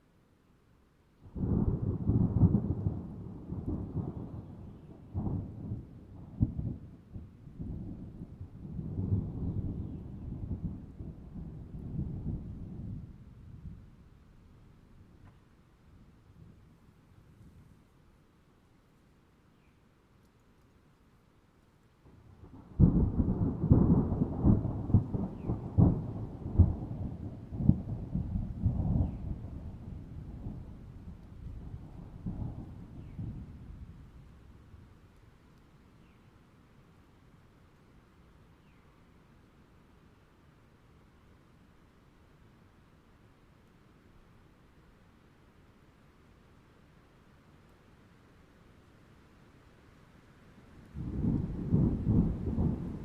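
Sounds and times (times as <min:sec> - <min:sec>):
rolling thunder: 0:22.4 - 0:34.6, 0:51.0 - 0:53.0
thunder cracks: 0:51.0 - 0:53.0.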